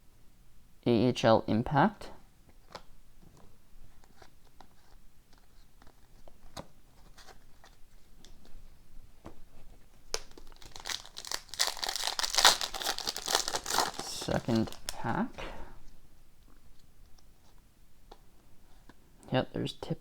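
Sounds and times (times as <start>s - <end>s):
card pack wrapper crinkling: 10.0s - 15.5s.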